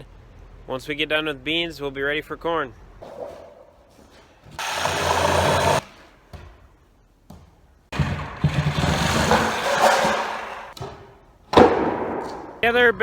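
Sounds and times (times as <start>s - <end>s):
farm machinery engine running: 4.6s - 5.8s.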